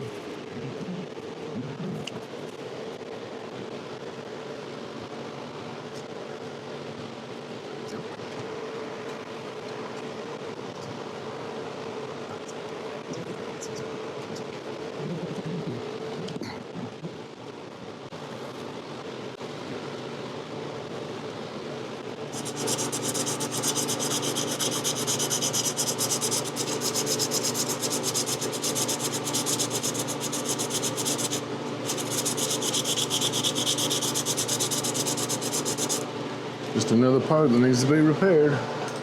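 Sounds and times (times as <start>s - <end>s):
hand scrubbing on wood: 22.3s - 36.0s.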